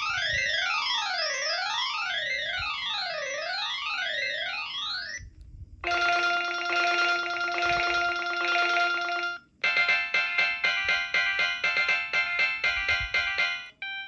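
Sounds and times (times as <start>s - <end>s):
buzzy electronic ringtone: 5.8s - 14.0s
sweeping electronic ringtone: 5.8s - 14.0s.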